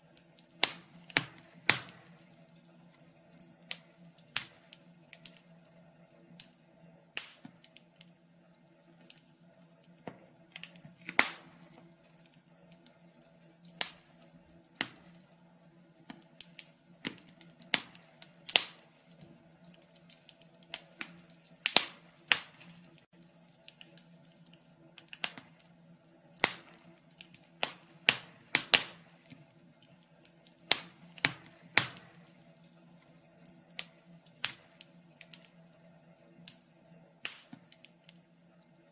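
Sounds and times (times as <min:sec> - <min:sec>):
wood fire crackling and popping: 0:00.0 - 0:38.9.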